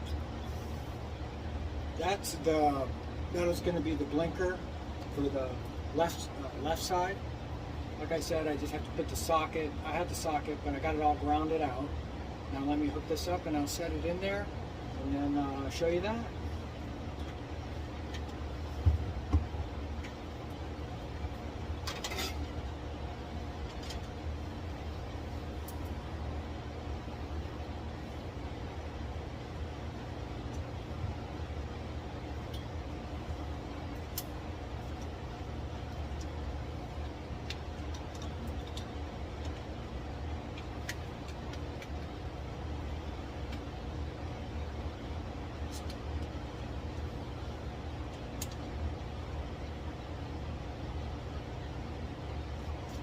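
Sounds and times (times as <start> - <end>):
low mechanical hum: 0.0 - 53.0
steady low rumble: 0.0 - 53.0.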